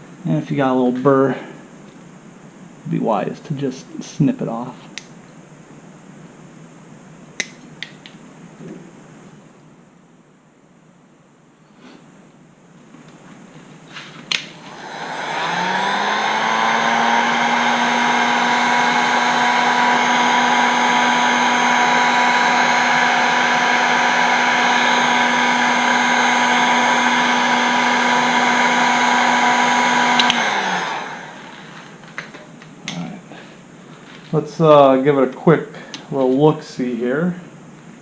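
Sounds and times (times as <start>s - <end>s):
heat gun fan whirring: 13.8s - 33.0s.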